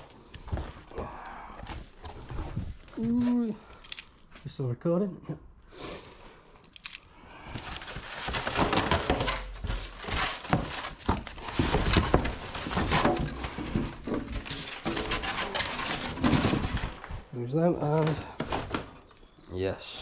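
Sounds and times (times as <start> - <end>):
packaging rustling: 6.8 - 19.4.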